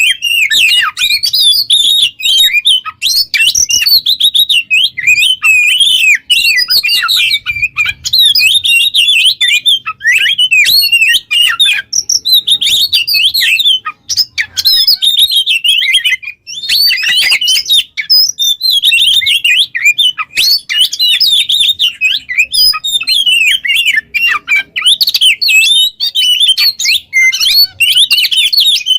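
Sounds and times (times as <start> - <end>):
bird song whistling and warbling: 0.0 - 28.9.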